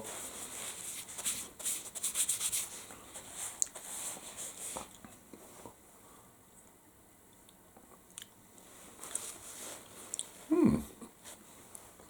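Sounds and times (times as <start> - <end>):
tissue rustling on hands: 8.7 - 10.5.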